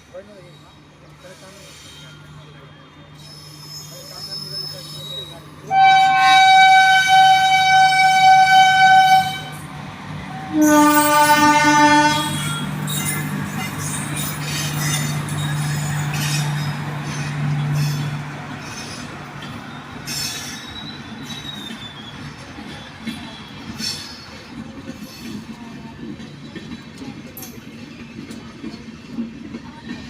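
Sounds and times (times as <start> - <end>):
train running noise: 0.0 - 30.0
train horn blasts: 5.7 - 9.6, 10.3 - 12.7.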